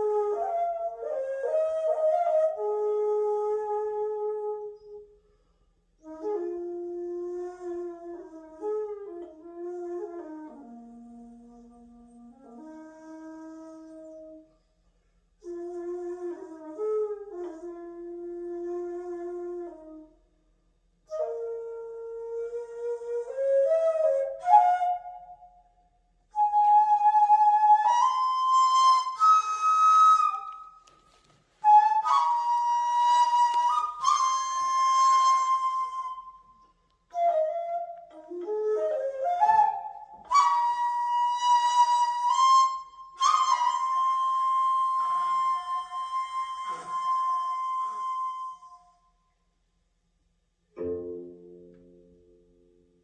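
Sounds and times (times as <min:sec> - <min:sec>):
bamboo flute slow melody: 0:00.0 - 0:49.4
bamboo flute high note: 0:26.3 - 0:36.5, 0:37.1 - 0:49.2.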